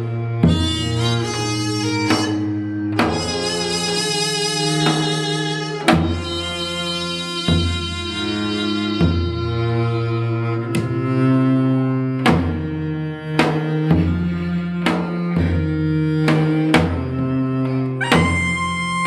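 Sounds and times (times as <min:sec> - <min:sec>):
high double-reed wind note: 0:00.5 - 0:09.9, 0:18.0 - 0:19.0
bowed zither low held notes: 0:18.0 - 0:19.0
sharp drum strokes: 0:18.0 - 0:19.0.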